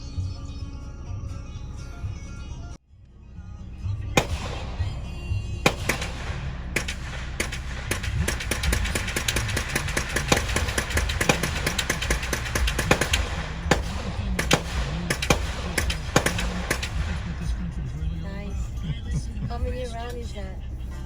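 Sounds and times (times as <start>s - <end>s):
gunshots: 4.2s - 18.9s.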